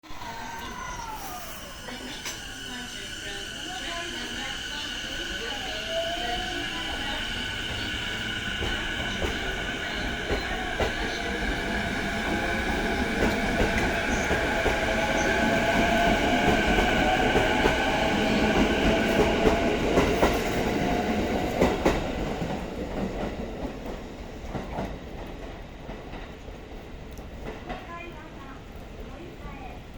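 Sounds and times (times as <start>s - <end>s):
electric train motors whining: 0.3s - 19.8s.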